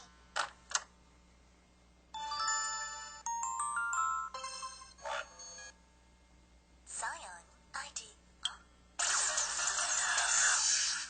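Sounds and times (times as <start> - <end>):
mobile phone electronic jingle: 2.2 - 5.7.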